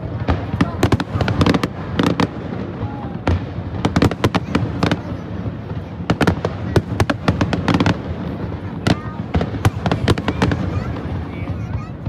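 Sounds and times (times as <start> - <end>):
distant explosions rumble: 0.0 - 12.0
fireworks sharp bangs: 0.0 - 12.0.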